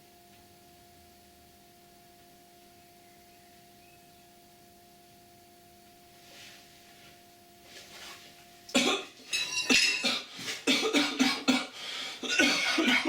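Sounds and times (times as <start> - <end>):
faint steady hum: 0.0 - 13.0
man coughing hard: 8.7 - 13.0.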